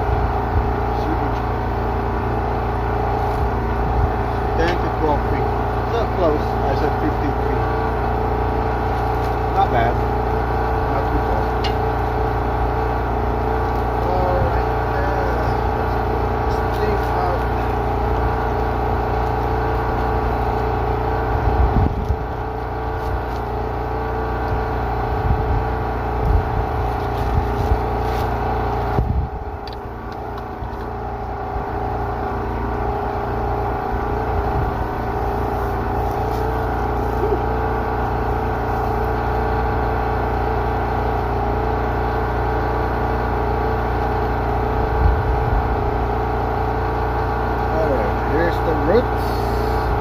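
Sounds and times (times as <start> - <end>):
mechanical motor drone: 0.0 - 50.0
low rumble: 7.8 - 39.8.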